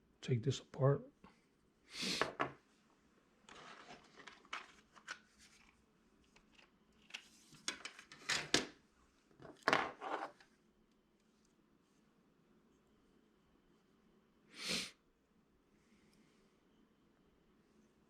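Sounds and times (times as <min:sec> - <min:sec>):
scraping and rustling: 0:03.5 - 0:05.8.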